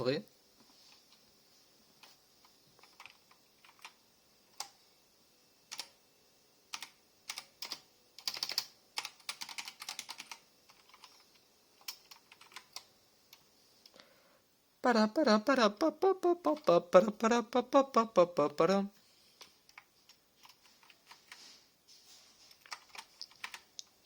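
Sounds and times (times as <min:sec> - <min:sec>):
mechanical keyboard keys clicking: 0:02.8 - 0:04.0, 0:06.7 - 0:11.2, 0:11.8 - 0:12.9, 0:22.6 - 0:23.6.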